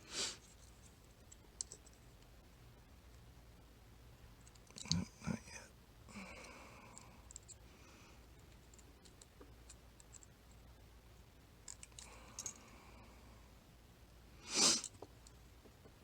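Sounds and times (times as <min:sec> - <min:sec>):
small tools clicking and scraping: 0:11.6 - 0:12.6.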